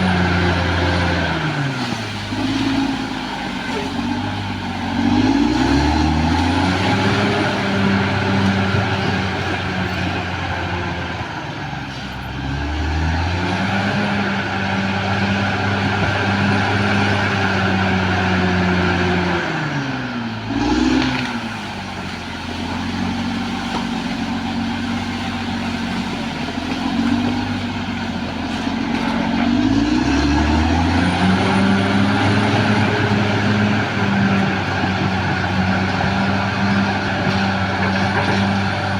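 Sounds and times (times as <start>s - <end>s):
bulldozer diesel engine under load: 0.0s - 38.9s.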